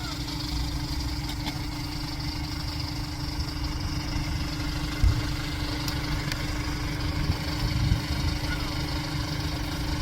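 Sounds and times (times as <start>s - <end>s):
engine hum: 0.0s - 10.0s
low rumble: 2.6s - 10.0s.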